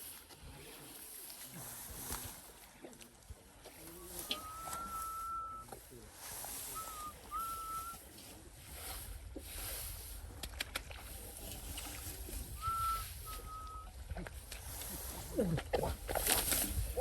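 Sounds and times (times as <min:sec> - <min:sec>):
two-note whistle: 0:04.3 - 0:05.7, 0:06.8 - 0:08.0, 0:12.6 - 0:13.9.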